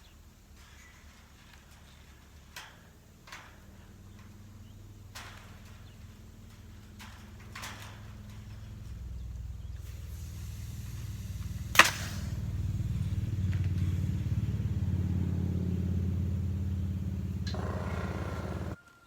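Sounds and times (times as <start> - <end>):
low engine hum: 3.9 - 18.8.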